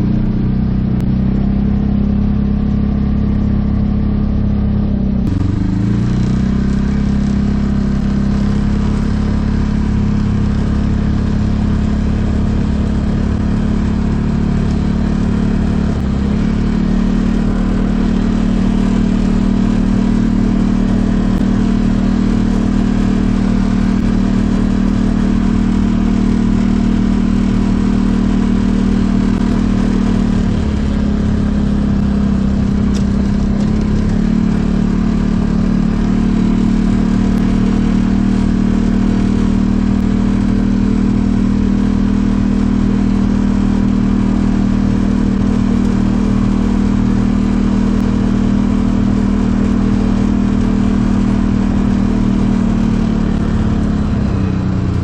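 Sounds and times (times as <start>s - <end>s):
utility vehicle engine running: 0.0s - 55.0s.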